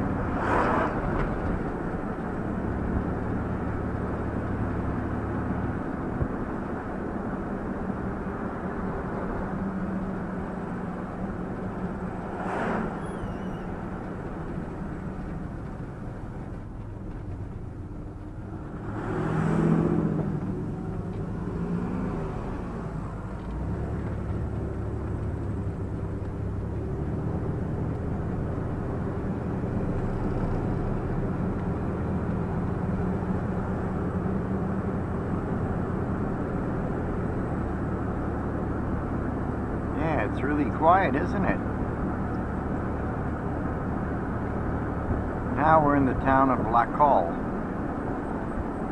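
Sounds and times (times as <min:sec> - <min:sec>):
van engine and tyre noise: 0:00.0 - 0:48.9.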